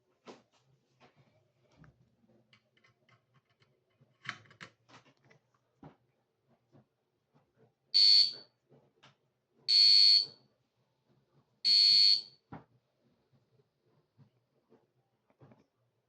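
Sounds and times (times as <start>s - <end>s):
fire alarm beeps: 8.0s - 8.4s, 9.7s - 10.3s, 11.7s - 12.4s.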